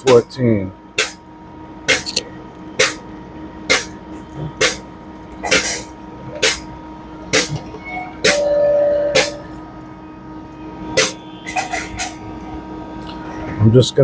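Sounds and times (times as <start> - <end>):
frozen drink machine humming: 0.0 - 14.0
mid-pitched tone: 7.5 - 12.6.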